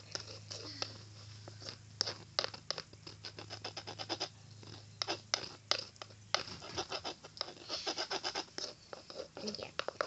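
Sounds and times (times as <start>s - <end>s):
pencil stirring sticky slime: 0.0s - 10.0s.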